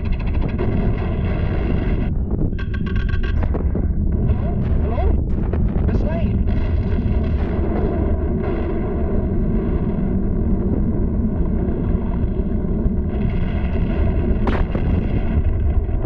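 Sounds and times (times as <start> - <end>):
deep volcano rumbling: 0.0 - 16.0
sharp crack: 13.1 - 16.0.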